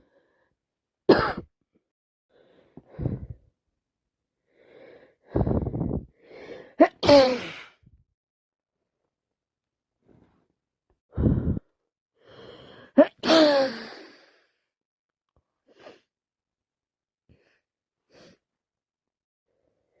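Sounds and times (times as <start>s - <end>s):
woman sneezing: 6.8s - 7.8s, 13.0s - 14.0s.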